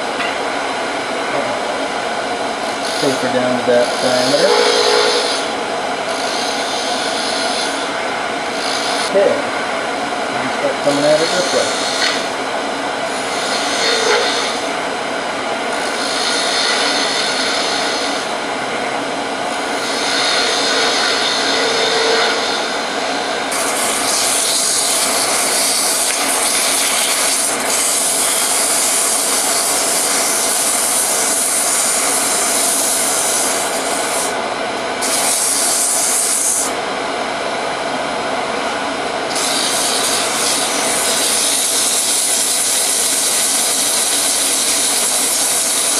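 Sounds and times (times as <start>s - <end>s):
wood lathe running: 2.5s - 9.4s, 10.5s - 15.0s, 15.6s - 36.8s, 39.2s - 45.9s
turning tool cutting wood: 2.6s - 5.5s, 6.2s - 7.9s, 8.5s - 9.1s, 10.9s - 12.4s, 13.1s - 14.8s, 15.7s - 18.4s, 19.5s - 34.4s, 35.0s - 36.8s, 39.3s - 45.9s.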